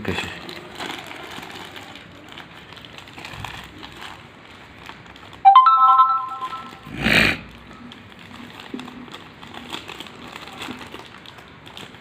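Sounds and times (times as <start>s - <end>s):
loud rustling noise: 0.0s - 5.4s
electronic rising chime: 5.5s - 6.8s.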